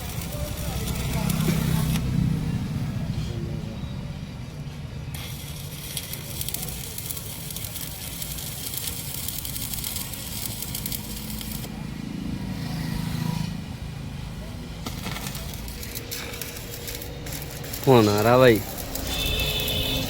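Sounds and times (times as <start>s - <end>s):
arc welding crackling: 0.0s - 2.1s, 5.1s - 11.7s, 14.8s - 20.0s.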